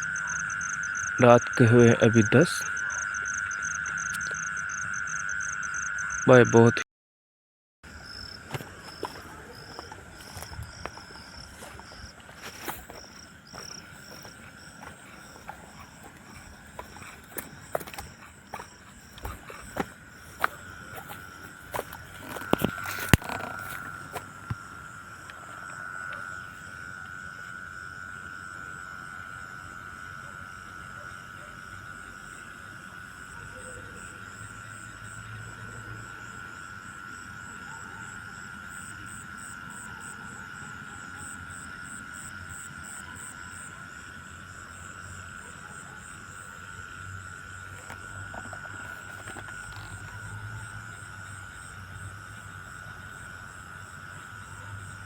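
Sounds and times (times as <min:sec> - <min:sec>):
fast high pulsing chirp: 0:00.0 - 0:06.7
steady high insect trill: 0:00.0 - 0:06.8, 0:07.9 - 0:55.0.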